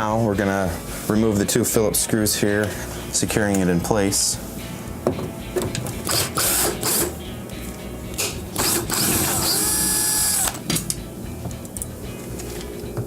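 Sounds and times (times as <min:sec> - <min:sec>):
power screwdriver whine: 0:06.1 - 0:07.1, 0:08.6 - 0:10.6.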